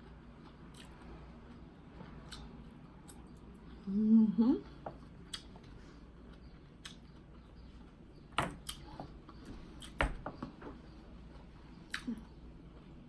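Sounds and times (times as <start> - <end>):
eating clicks and knocks: 8.3 - 10.8.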